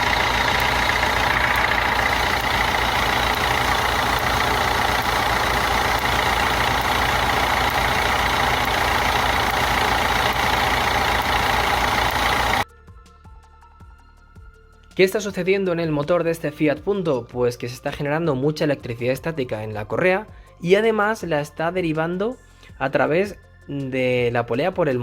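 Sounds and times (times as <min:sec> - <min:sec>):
diesel engine idling: 0:00.0 - 0:12.6.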